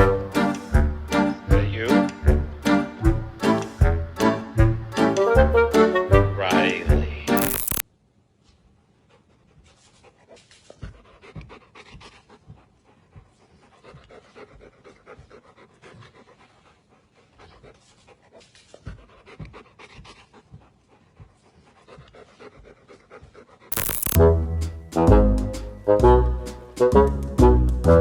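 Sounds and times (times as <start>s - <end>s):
dog panting: 9.1s - 23.7s.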